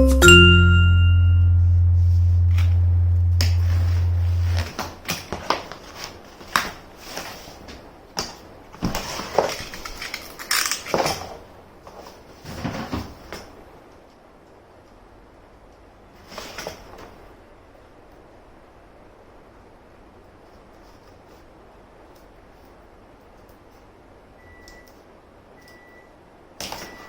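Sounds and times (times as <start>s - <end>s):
low held tone: 0.0s - 5.0s.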